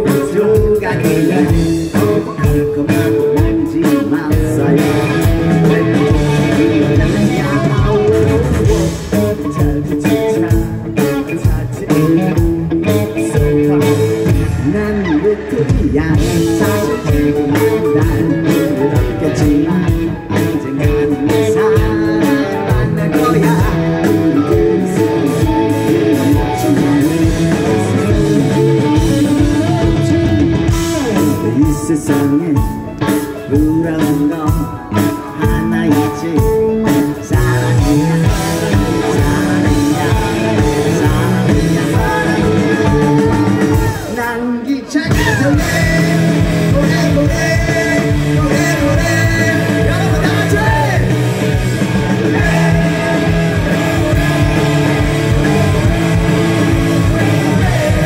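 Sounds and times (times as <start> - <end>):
bass guitar: 0.0 - 58.0
electric guitar: 0.0 - 58.0
drum beat: 37.4 - 44.2, 45.1 - 58.0.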